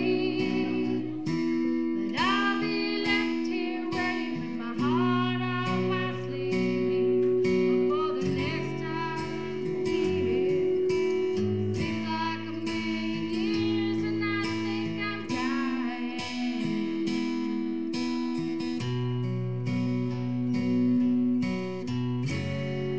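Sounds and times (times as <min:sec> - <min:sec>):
person singing: 0:00.0 - 0:17.9
guitar accompaniment: 0:00.0 - 0:22.9.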